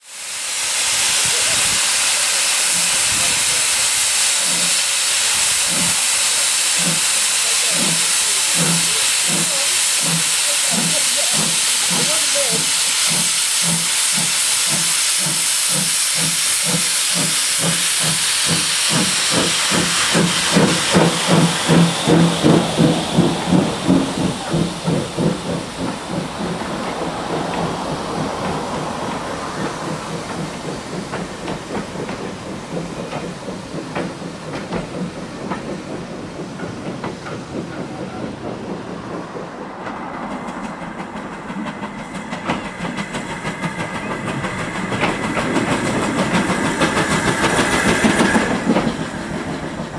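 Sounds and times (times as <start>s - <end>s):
steam hissing: 0.0s - 49.9s
locomotive exhaust beats: 0.2s - 49.9s.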